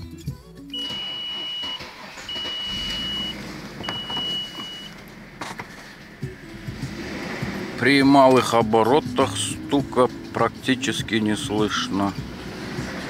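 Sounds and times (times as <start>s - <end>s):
car engine starting and idling: 0.6s - 13.0s
long high-pitched beeps: 0.8s - 4.9s.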